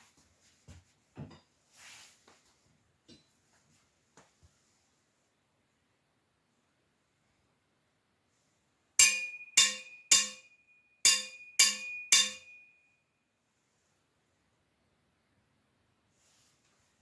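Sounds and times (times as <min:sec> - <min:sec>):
metal sai striking with clink: 0:09.0 - 0:12.8.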